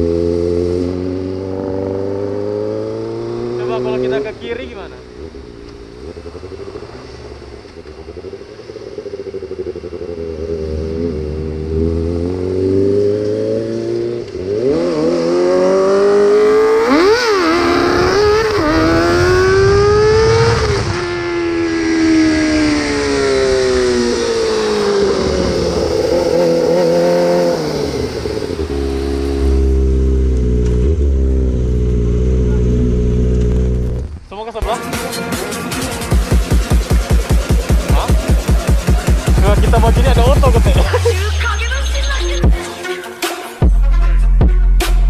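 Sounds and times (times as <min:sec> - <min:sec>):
motorcycle engine revving: 0:00.0 - 0:34.4, 0:35.8 - 0:42.5
low wind rumble: 0:17.3 - 0:34.4.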